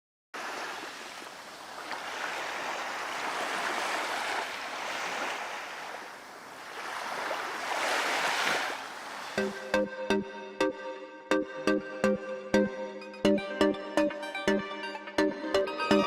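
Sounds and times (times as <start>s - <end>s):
sea waves rushing: 0.4s - 9.6s.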